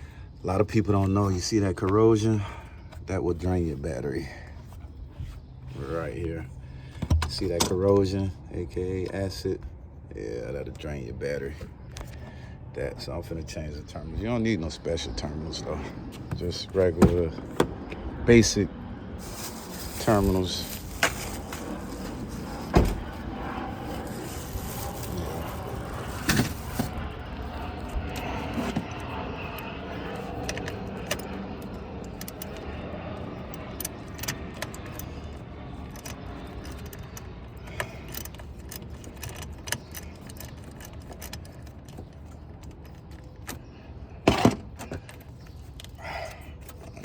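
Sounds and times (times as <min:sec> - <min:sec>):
steady background hum: 0:00.0 - 0:47.0
metal tools clinking and scraping: 0:33.8 - 0:43.6.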